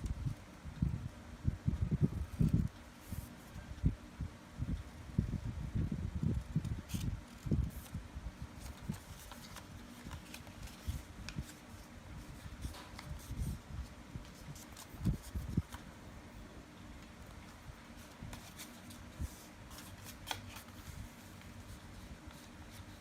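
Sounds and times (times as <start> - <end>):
paper crinkling and folding: 6.3 - 16.0, 17.0 - 23.0.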